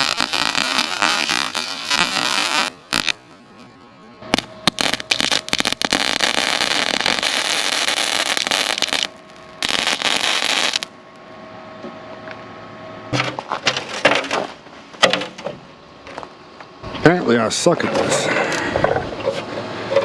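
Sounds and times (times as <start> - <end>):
arc welder crackling: 0.0 - 10.9.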